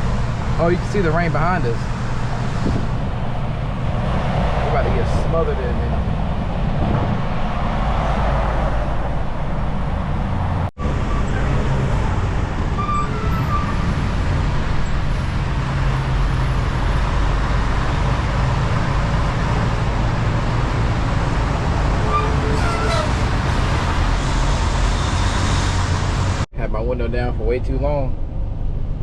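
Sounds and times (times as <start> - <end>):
truck engine drone: 0.0 - 26.5
road noise: 0.0 - 29.0
wind rushing through window: 1.6 - 12.8.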